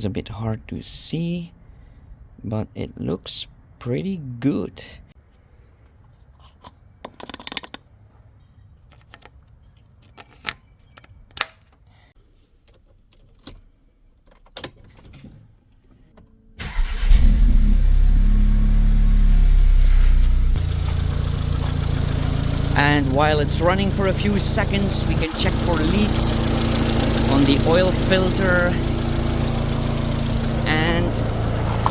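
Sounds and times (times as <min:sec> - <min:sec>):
car engine starting and idling: 0:16.6 - 0:31.9.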